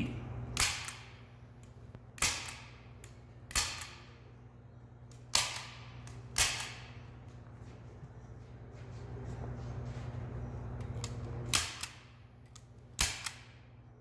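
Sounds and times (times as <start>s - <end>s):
staple gun firing: 2.2s - 4.1s, 5.3s - 6.9s, 11.5s - 13.6s.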